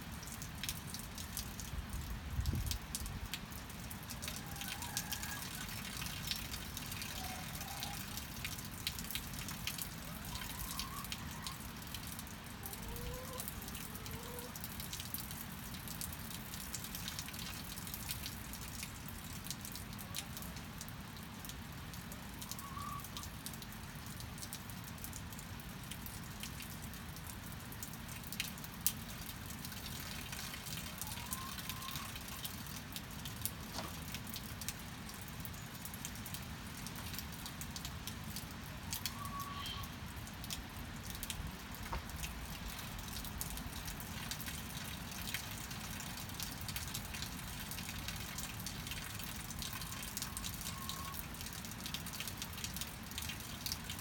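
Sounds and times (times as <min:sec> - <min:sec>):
steady rain drops ticking: 0:00.0 - 0:54.0
hens clucking: 0:12.7 - 0:14.5.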